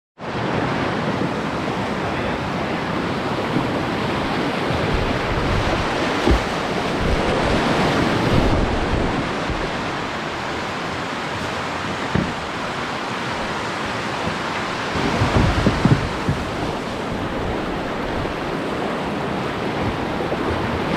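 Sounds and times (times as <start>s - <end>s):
river rushing: 0.2s - 20.9s
wind buffeting microphone: 2.8s - 20.9s
low thump: 4.9s - 7.5s, 12.1s - 12.4s.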